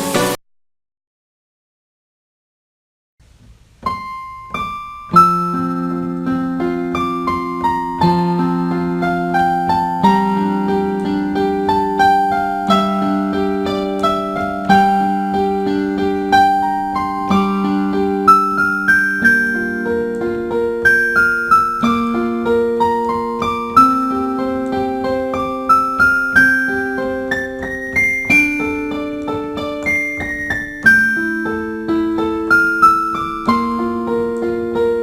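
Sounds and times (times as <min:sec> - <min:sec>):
slow electric piano melody: 0:03.8 - 0:35.0.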